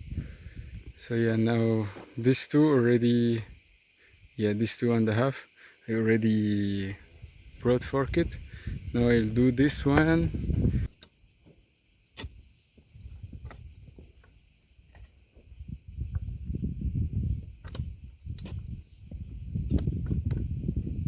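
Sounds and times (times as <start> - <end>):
crickets chirping: 0.0 - 21.0
low thuds and rustling: 7.3 - 21.0
sharp clicks: 17.6 - 18.6.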